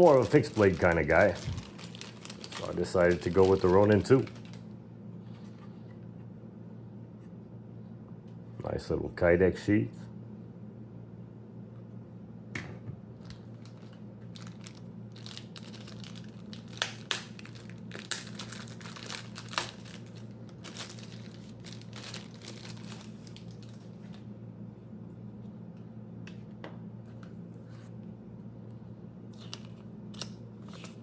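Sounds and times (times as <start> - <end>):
packaging crinkling: 0.0 - 4.7, 13.2 - 24.3, 29.4 - 31.0.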